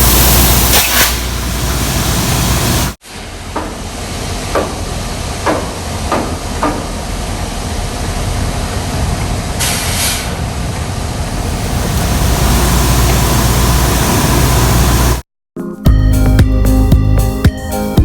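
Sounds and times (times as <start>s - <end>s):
hiss of air: 0.0s - 3.0s, 11.3s - 15.2s
marine diesel engine rumble: 11.1s - 15.2s.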